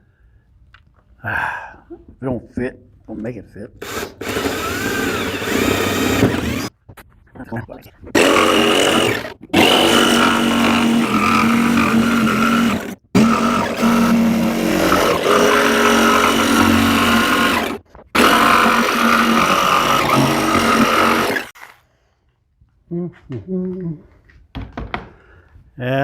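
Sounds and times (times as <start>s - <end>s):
power tool motor whining: 3.8s - 6.7s, 8.2s - 21.6s.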